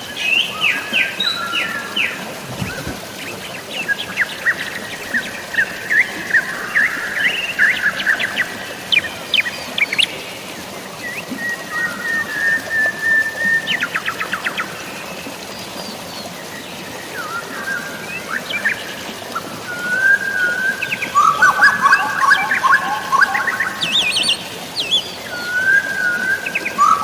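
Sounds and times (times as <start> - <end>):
drizzling rain and falling water: 0.0 - 27.0
birds singing and calling: 19.7 - 27.0.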